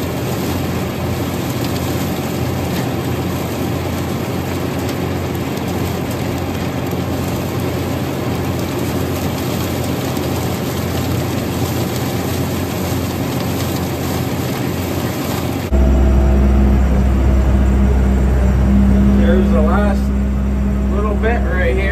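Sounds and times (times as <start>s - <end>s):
tractor and chopper drone: 15.4s - 21.9s
deep steady hum: 15.7s - 21.9s.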